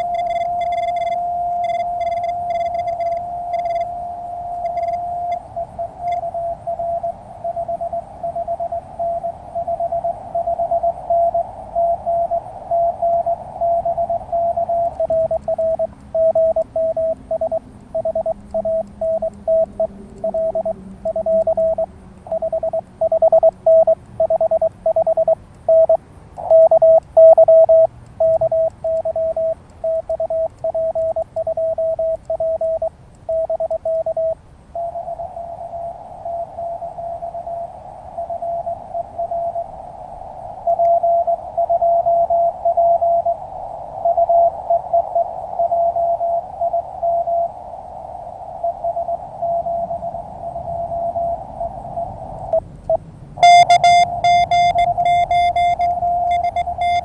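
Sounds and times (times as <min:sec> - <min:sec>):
morse code tone: 0:00.0 - 0:06.2, 0:15.0 - 0:34.4, 0:53.4 - 0:57.0.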